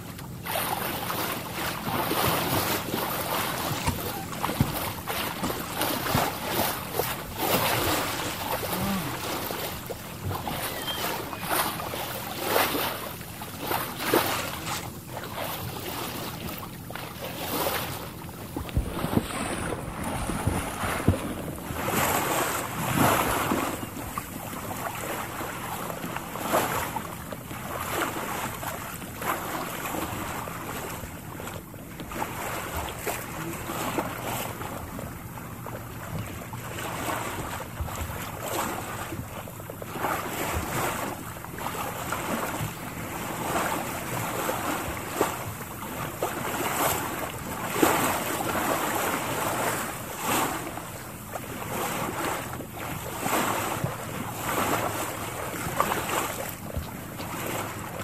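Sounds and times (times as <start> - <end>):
sea waves washing on shore: 0.0 - 58.0
wind buffeting microphone: 18.3 - 23.8.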